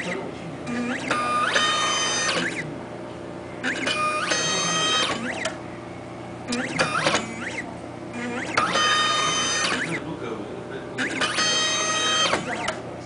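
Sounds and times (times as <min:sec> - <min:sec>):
stepper motors whining: 0:00.0 - 0:02.7, 0:03.6 - 0:05.6, 0:06.4 - 0:10.2, 0:11.0 - 0:12.9.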